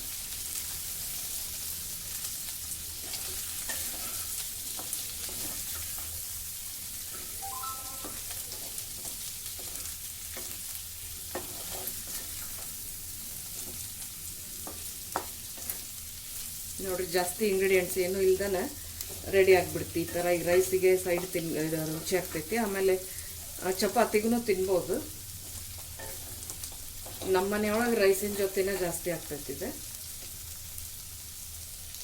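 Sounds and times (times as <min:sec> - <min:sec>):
potatoes sizzling in oil: 0:00.0 - 0:32.0
spatula scraping a pan: 0:02.9 - 0:06.2, 0:08.3 - 0:14.0, 0:14.6 - 0:16.0, 0:25.4 - 0:29.0.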